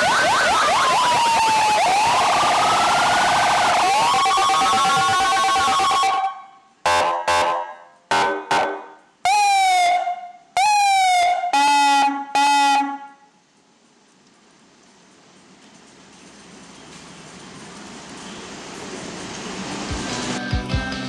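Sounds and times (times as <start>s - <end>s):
electronic siren wailing: 0.0s - 13.2s
siren whoops: 0.0s - 13.2s.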